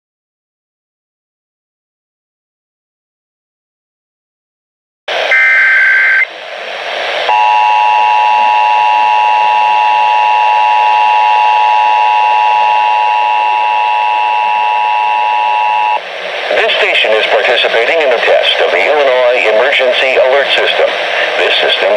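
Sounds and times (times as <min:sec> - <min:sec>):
broadcast hiss: 0:05.1 - 0:21.9
digital data warble: 0:05.3 - 0:06.3
two-tone attention signal: 0:05.3 - 0:06.3, 0:07.3 - 0:16.0.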